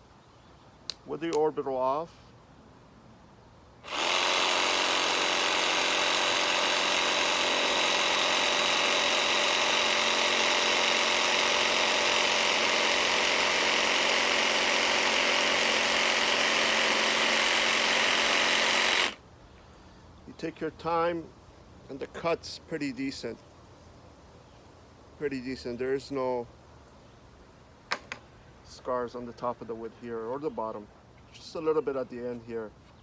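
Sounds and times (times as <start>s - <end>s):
jigsaw cutting wood: 3.8s - 19.2s.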